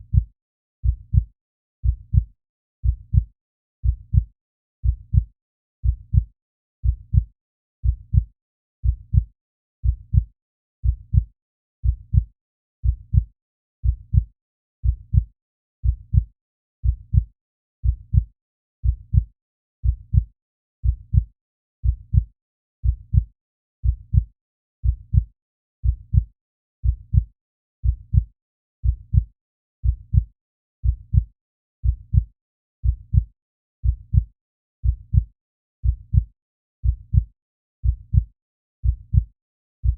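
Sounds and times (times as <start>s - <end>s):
heartbeat double thump: 27.8s - 28.2s, 28.8s - 29.2s, 29.8s - 30.2s, 30.8s - 31.2s, 31.8s - 32.2s, 32.8s - 33.2s, 33.8s - 34.2s, 34.8s - 35.2s, 35.8s - 36.2s, 36.8s - 37.2s, 37.8s - 38.2s, 38.8s - 39.2s.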